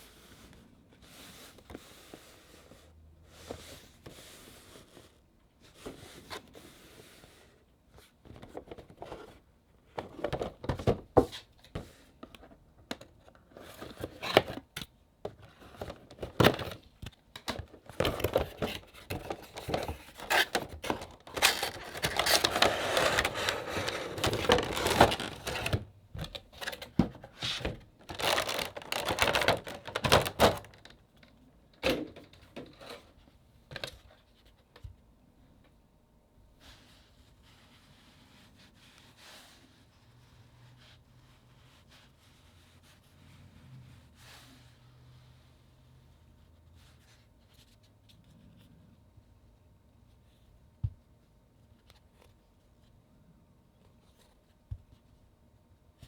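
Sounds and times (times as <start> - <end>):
packaging crinkling and tearing: 18.1 - 25.9, 28.0 - 31.0.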